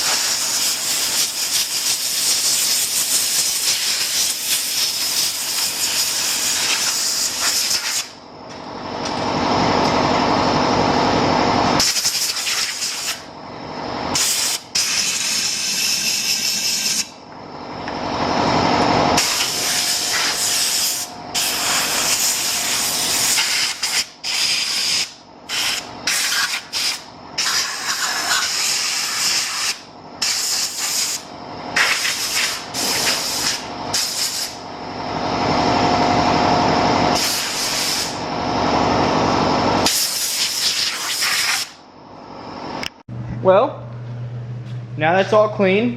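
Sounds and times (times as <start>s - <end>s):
compressed air blasts: 11.8s - 13.2s, 14.1s - 17.1s, 19.2s - 31.2s, 31.8s - 34.6s, 37.2s - 38.2s, 39.8s - 41.8s.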